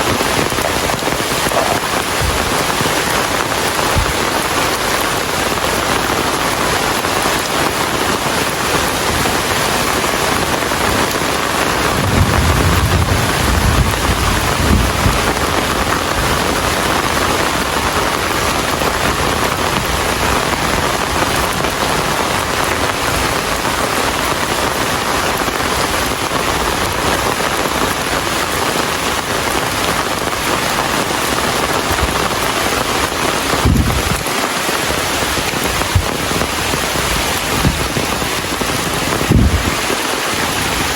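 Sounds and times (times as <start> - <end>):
rain falling: 0.0 - 40.9
low rumble: 12.0 - 15.2.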